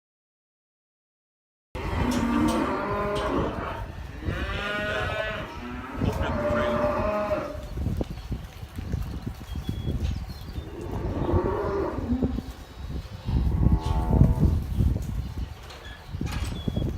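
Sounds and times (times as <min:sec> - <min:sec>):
calves mooing: 0:01.8 - 0:07.6, 0:10.6 - 0:12.6, 0:13.2 - 0:14.6.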